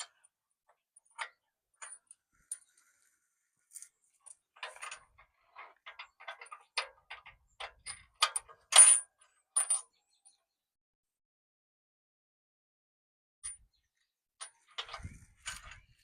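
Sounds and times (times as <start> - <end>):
metal bolts clinking: 4.6 - 9.8.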